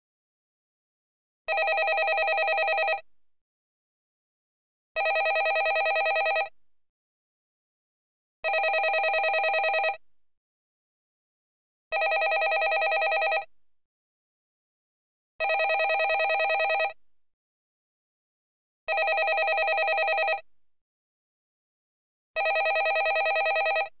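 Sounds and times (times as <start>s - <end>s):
landline telephone ringing: 1.5s - 3.0s, 5.0s - 6.5s, 8.5s - 10.0s, 12.0s - 13.5s, 15.4s - 17.0s, 18.9s - 20.4s, 22.4s - 23.9s.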